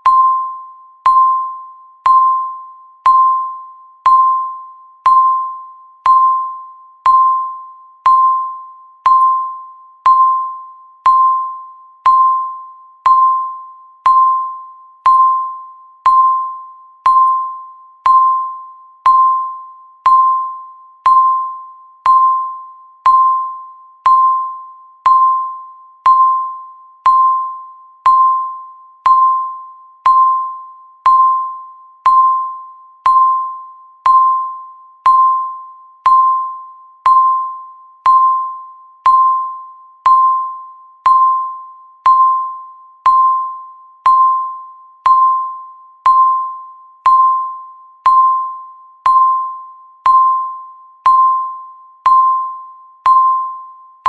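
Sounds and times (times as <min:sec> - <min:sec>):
timer beeping: 0:00.0 - 0:54.0.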